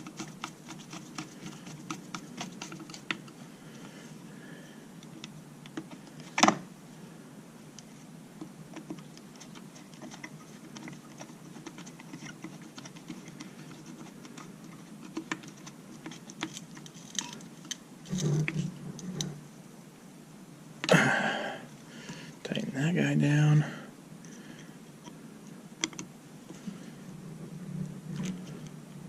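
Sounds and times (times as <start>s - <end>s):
metal ticks and scrapes: 0.0s - 4.0s, 8.7s - 19.4s.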